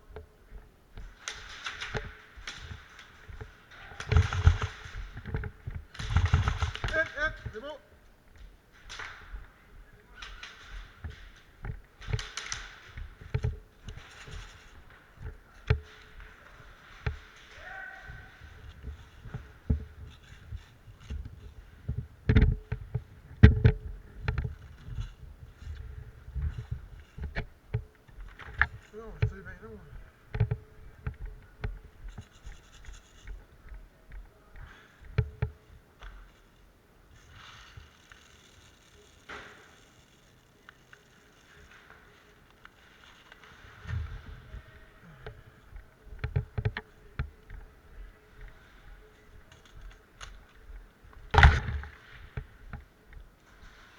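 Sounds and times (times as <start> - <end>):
sharp clicks and knocks: 0.0 - 9.6, 10.2 - 44.6, 45.2 - 53.8
scraping and rustling: 0.0 - 53.9.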